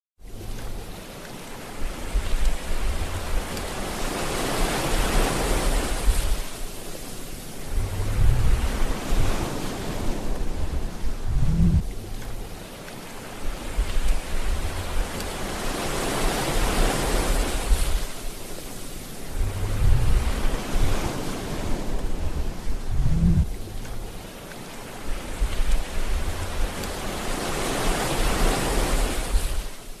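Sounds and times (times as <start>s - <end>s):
ocean waves breaking: 0.2s - 30.0s
low rumbles: 7.5s - 12.7s, 13.4s - 15.6s, 19.0s - 24.2s.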